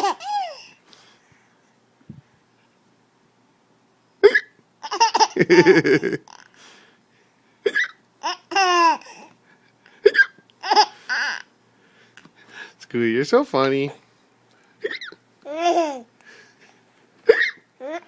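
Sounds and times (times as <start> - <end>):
baby giggling: 0.0 - 0.6, 4.2 - 6.5, 7.7 - 9.3, 10.0 - 11.5, 14.8 - 16.1, 17.3 - 18.0
man hiccuping: 4.2 - 4.5.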